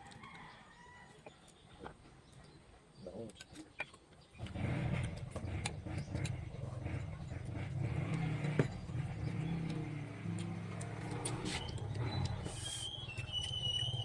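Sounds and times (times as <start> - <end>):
motor engine humming: 4.4 - 14.0.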